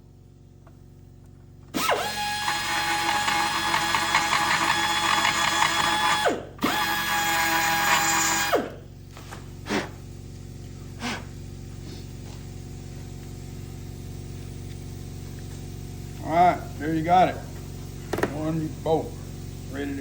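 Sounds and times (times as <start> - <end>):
power grinder whining: 1.7 - 8.8.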